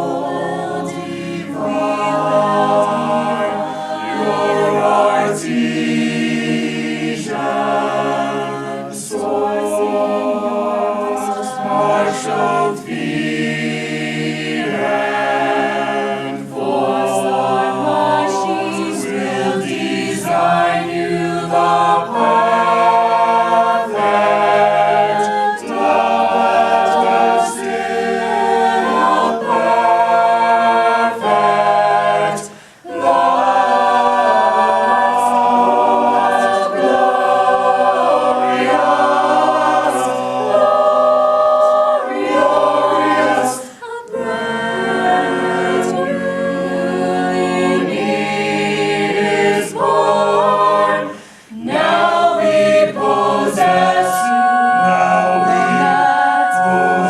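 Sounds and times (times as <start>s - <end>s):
choir singing a hymn: 0.0s - 57.0s.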